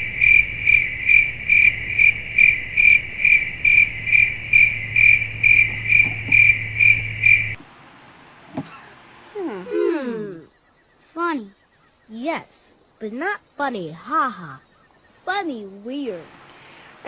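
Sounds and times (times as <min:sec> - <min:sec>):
cricket chirping: 0:00.0 - 0:07.6, 0:09.8 - 0:16.8.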